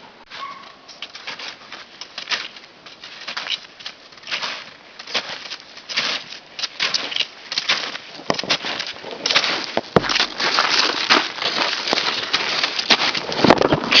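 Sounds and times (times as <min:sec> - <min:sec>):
snowshoes crunching through snow: 0:01.1 - 0:14.0.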